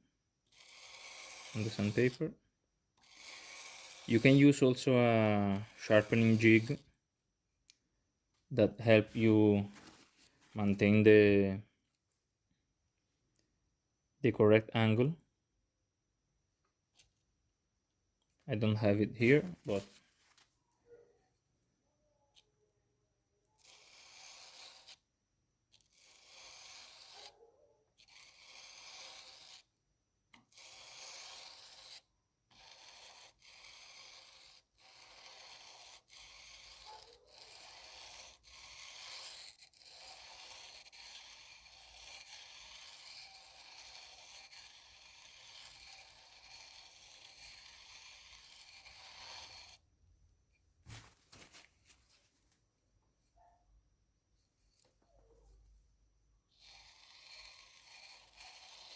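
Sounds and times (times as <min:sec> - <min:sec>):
chisel scraping on sandpaper: 0:00.5 - 0:02.2, 0:03.0 - 0:06.9, 0:18.8 - 0:20.4, 0:23.6 - 0:25.0, 0:25.7 - 0:27.4, 0:28.0 - 0:29.8, 0:30.4 - 0:49.8, 0:56.5 - 0:58.9.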